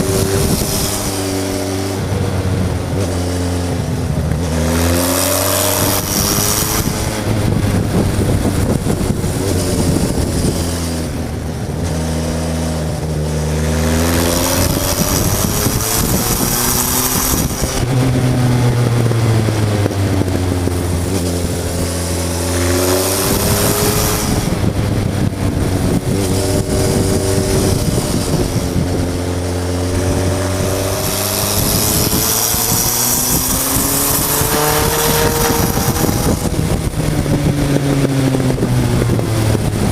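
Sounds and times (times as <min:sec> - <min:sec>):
motorcycle engine revving: 0:00.0 - 0:39.9
wind rushing hiss: 0:29.8 - 0:38.4.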